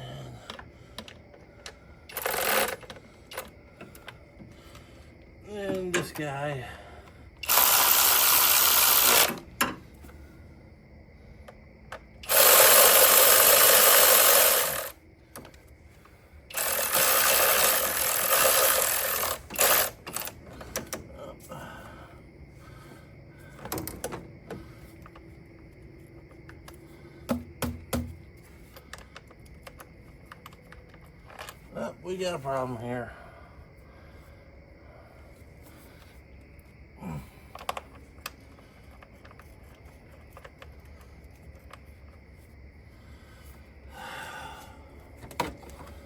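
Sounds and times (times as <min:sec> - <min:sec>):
power tool spinning bolts: 0:02.1 - 0:03.4, 0:07.4 - 0:09.7, 0:12.2 - 0:15.0, 0:16.5 - 0:20.9
tool handling clicks and knocks: 0:09.0 - 0:10.2, 0:19.1 - 0:21.1, 0:23.6 - 0:25.3, 0:26.3 - 0:31.7, 0:45.2 - 0:46.0.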